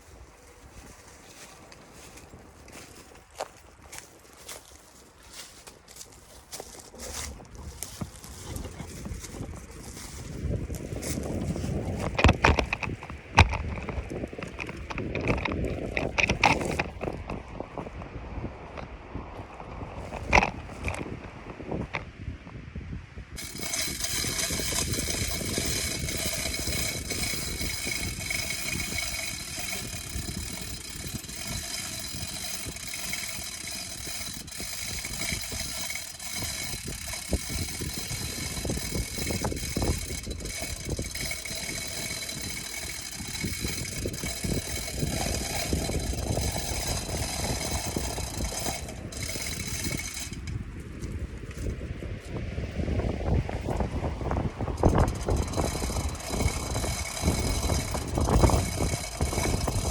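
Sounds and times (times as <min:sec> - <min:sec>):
chainsaw running high whine: 0:23.4 - 0:50.6, 0:54.7 - 0:59.9.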